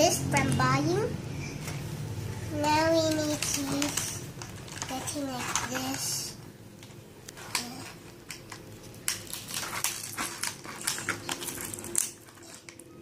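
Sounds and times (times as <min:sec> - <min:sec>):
plastic packaging crinkling: 0:03.0 - 0:06.3, 0:07.3 - 0:13.0
toy pieces clicking and knocking: 0:03.0 - 0:06.3.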